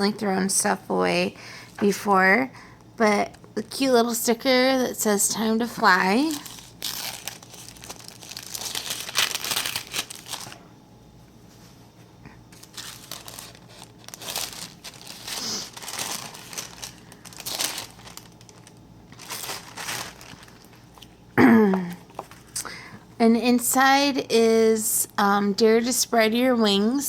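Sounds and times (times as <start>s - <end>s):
packaging rustling and crinkling: 5.6s - 10.6s, 12.5s - 21.2s.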